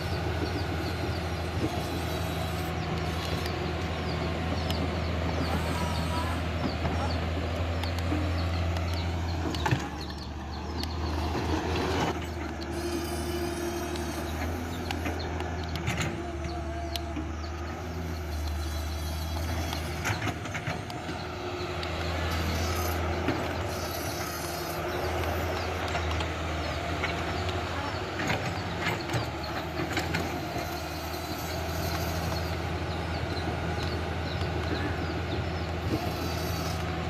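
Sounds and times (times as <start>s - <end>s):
small electric motors whirring: 0.0s - 37.0s.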